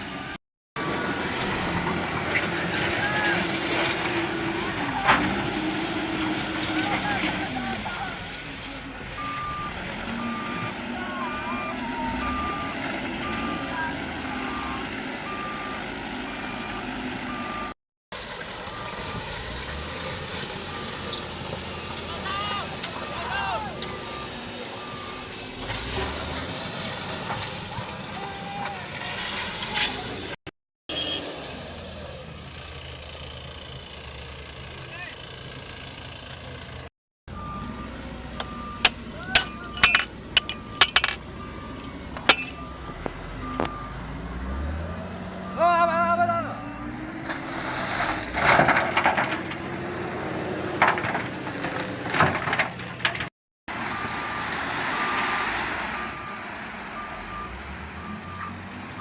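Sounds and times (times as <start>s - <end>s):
diesel engine running: 0.0s - 23.1s, 31.6s - 47.3s
reverse alarm beeping: 9.2s - 15.8s, 37.3s - 44.7s
metallic clinks and clanks: 39.3s - 41.2s, 42.2s - 42.6s.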